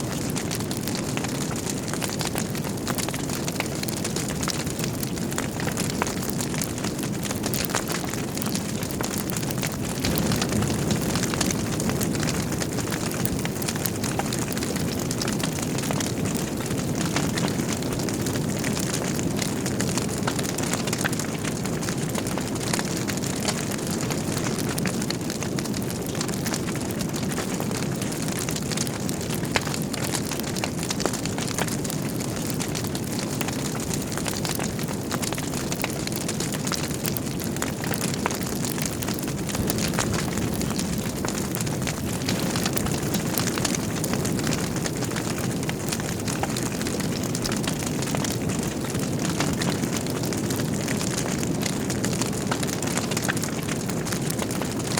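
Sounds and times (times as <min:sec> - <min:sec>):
burning logs crackling: 0:00.0 - 0:54.9
wood fire burning: 0:00.0 - 0:54.9.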